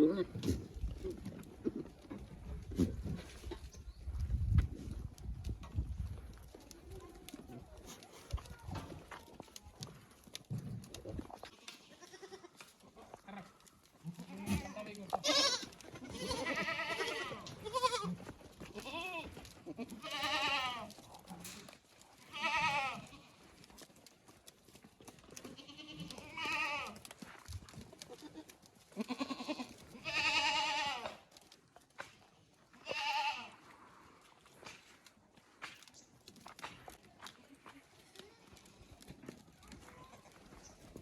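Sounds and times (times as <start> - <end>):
goats bleating: 11.4 - 21.0, 22.2 - 23.5, 25.4 - 27.1, 28.1 - 31.2, 32.8 - 33.7.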